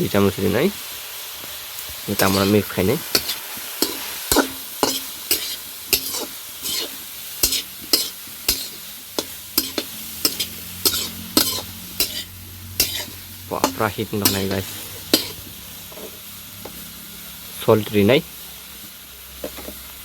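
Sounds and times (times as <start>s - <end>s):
vegetables sizzling: 0.0s - 20.0s
spoon scraping a pan: 2.1s - 16.9s, 19.4s - 19.8s.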